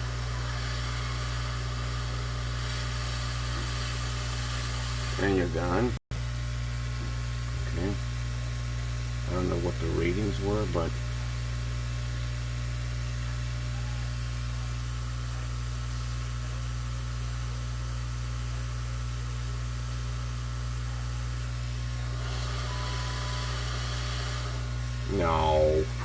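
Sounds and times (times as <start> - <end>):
hot air blower hissing: 0.0 - 5.9, 21.7 - 26.0.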